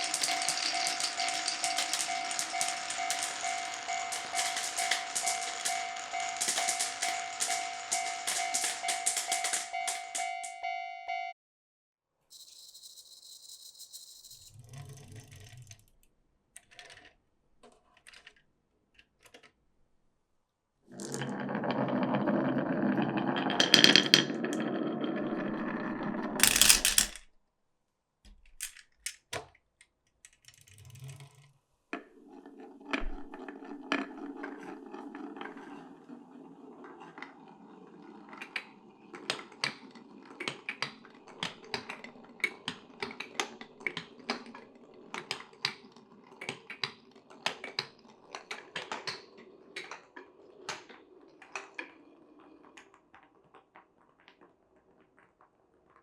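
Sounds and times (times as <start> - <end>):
marbles rolling in wooden run: 0.0 - 10.6, 20.9 - 27.2, 31.3 - 56.0.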